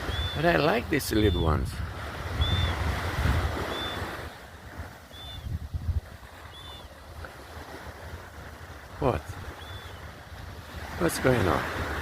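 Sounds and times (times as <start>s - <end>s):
surf washing up the beach: 0.0s - 12.0s
wind gusting on microphone: 0.0s - 12.0s
faint high chirps: 0.1s - 1.6s, 3.7s - 4.0s, 5.1s - 5.6s.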